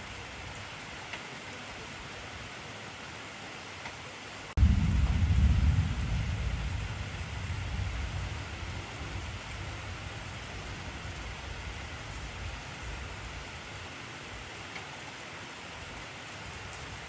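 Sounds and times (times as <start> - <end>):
heavy rainfall: 0.0 - 17.0
thunder rumbling: 4.6 - 13.9.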